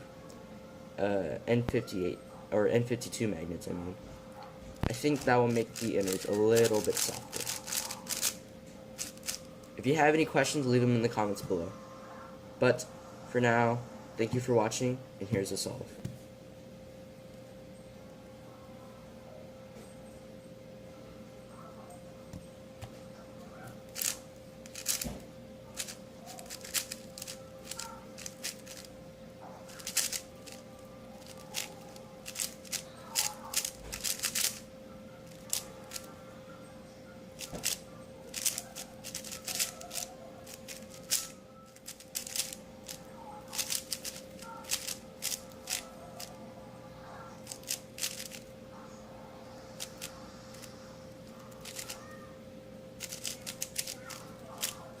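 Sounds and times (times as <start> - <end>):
plastic puzzle cube clicking: 5.6 - 8.4, 9.0 - 9.4, 24.0 - 25.0, 25.8 - 28.9, 29.8 - 30.6, 31.2 - 34.6, 37.4 - 43.0, 43.6 - 45.8, 47.5 - 48.4, 51.6 - 52.0, 53.0 - 54.8.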